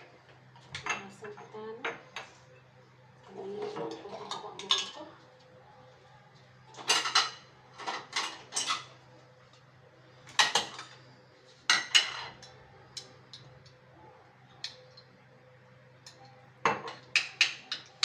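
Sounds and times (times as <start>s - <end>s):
dishes and cutlery clinking: 3.6s - 5.1s, 6.7s - 9.0s, 11.7s - 13.5s, 16.0s - 18.0s.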